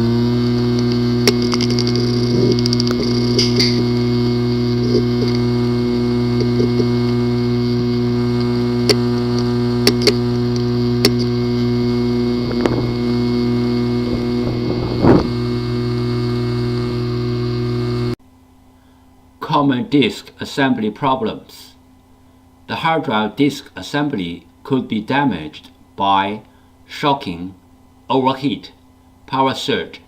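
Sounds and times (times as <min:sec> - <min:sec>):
loud machine hum: 0:00.0 - 0:18.2.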